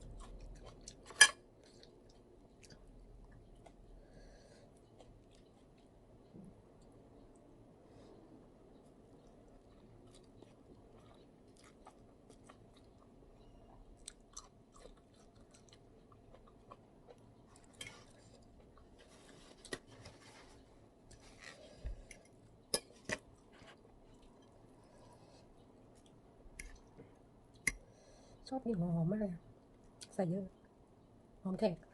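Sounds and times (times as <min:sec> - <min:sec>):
wet chewing: 0:08.7 - 0:18.9.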